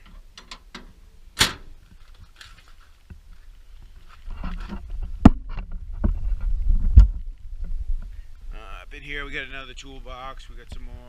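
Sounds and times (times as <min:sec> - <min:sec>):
wind rumble on microphone: 0:03.1 - 0:11.0.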